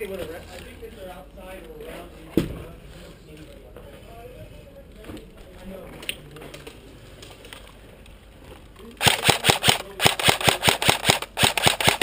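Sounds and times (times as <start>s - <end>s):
airsoft gunfire bursts: 9.0s - 12.0s.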